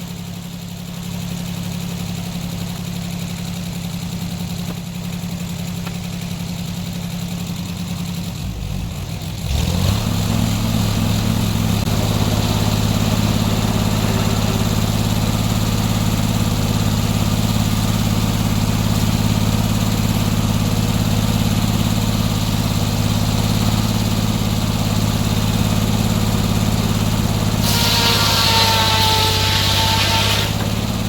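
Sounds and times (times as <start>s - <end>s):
sawmill engine running: 0.0s - 31.0s
loud hiss with whine: 27.6s - 30.6s.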